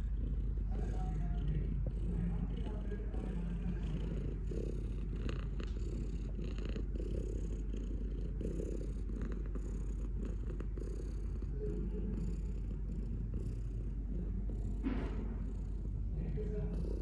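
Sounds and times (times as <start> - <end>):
cat purring: 0.0 - 17.0.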